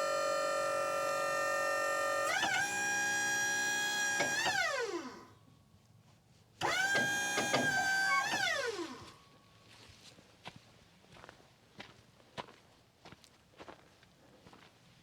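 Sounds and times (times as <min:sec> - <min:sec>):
hydraulic pump motor whining: 0:00.0 - 0:05.2, 0:06.6 - 0:09.1.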